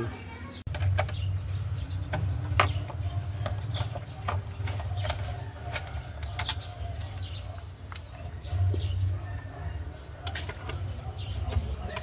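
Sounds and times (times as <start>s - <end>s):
hand tools clinking on metal: 10.3s - 12.0s.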